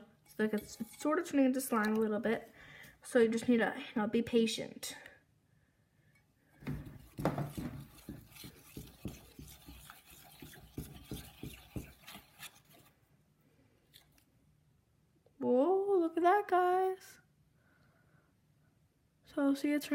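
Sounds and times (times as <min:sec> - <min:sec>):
spoon scraping in a bowl: 0:00.1 - 0:02.0, 0:06.7 - 0:13.0.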